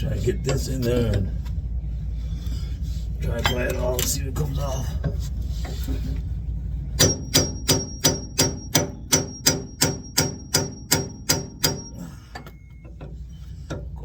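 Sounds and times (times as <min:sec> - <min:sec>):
hammer striking steel with ringing: 0:07.0 - 0:12.2.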